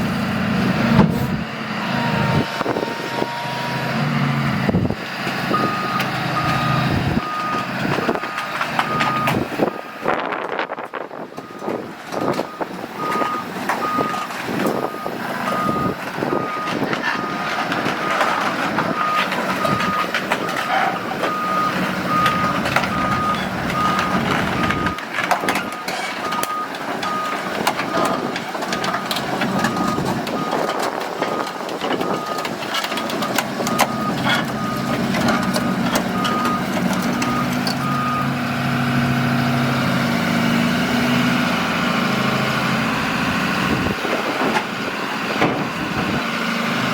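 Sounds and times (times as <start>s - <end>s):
diesel engine running: 0.0s - 46.9s
excavator travel alarm beeping: 2.0s - 3.8s, 5.5s - 10.6s, 11.2s - 18.2s, 18.8s - 28.9s, 29.5s - 38.5s
sharp clanks and rattles: 11.5s - 38.0s.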